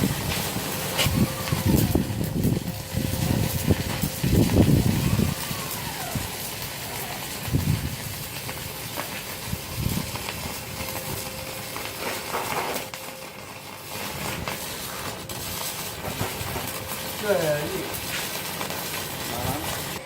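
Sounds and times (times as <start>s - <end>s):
welding arc crackling hiss: 0.0s - 20.0s.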